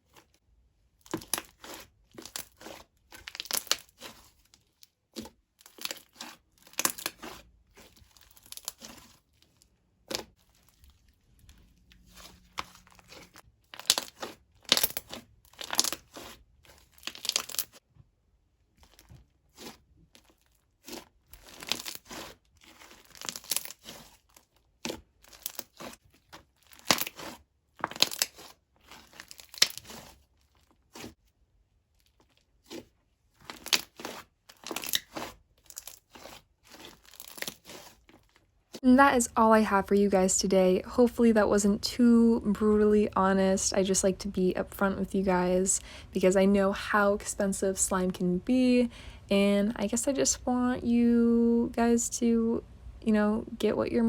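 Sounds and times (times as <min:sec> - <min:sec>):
slime crackling and popping: 0:01.0 - 0:17.8, 0:18.8 - 0:31.1, 0:32.0 - 0:38.8.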